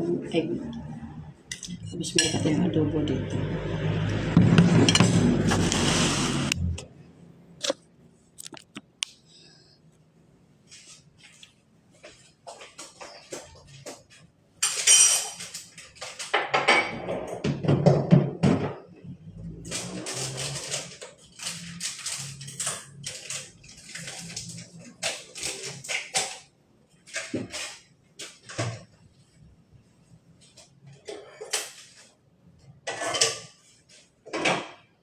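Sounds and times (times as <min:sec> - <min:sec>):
dishes and cutlery clattering: 0:01.5 - 0:02.6, 0:12.5 - 0:18.8, 0:32.8 - 0:33.6.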